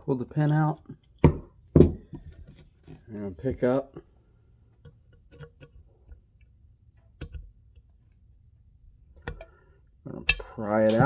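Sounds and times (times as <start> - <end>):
small metallic clicks and taps: 4.8 - 6.2, 7.2 - 7.8, 9.2 - 9.5.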